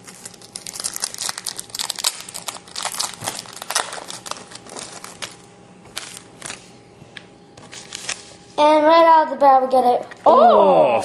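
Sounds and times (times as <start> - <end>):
plastic wrapping crinkling: 0.0 - 6.7.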